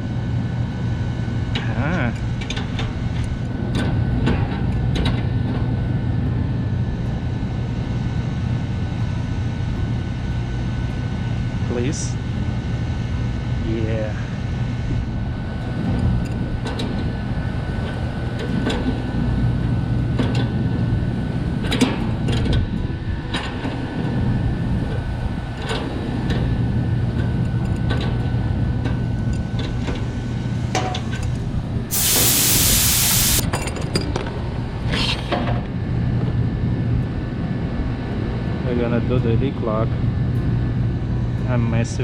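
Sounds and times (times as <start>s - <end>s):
refrigeration equipment humming: 0.0s - 33.6s
sharp gas hiss: 31.9s - 33.4s.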